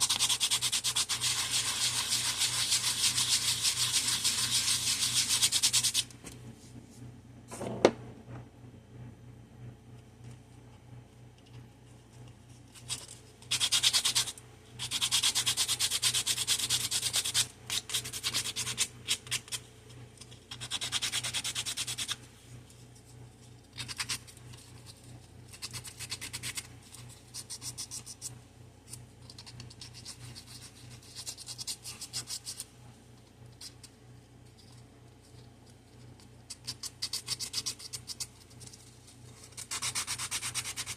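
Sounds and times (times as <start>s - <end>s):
sandpaper rubbing small pieces: 0.0s - 6.0s, 12.7s - 19.6s, 39.4s - 40.9s.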